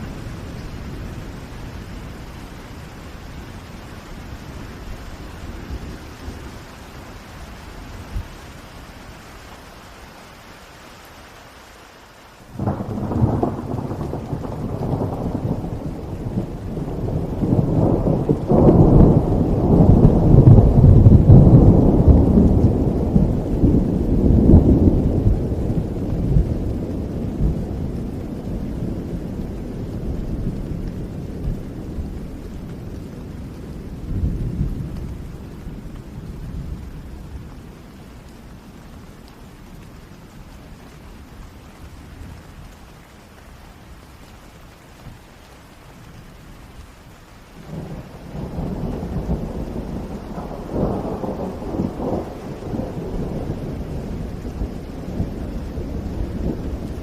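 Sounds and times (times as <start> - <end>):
steady rainfall: 0.0 - 57.0
thunder rumbling: 12.5 - 42.8, 47.6 - 57.0.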